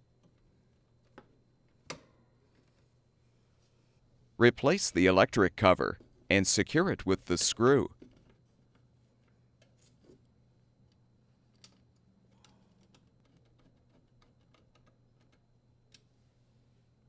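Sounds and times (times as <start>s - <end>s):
low steady hum: 0.0s - 13.2s.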